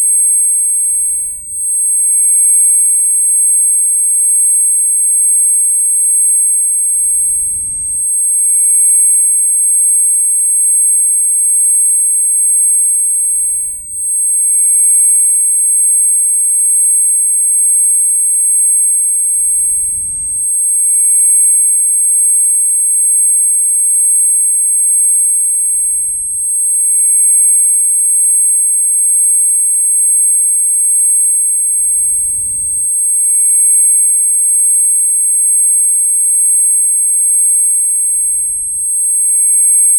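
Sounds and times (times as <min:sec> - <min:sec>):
high-pitched ringing tones: 0:00.0 - 0:39.9.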